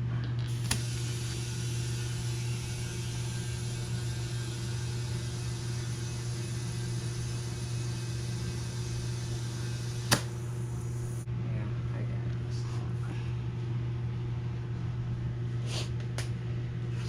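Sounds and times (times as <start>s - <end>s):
machine humming with hiss: 0.5s - 11.3s.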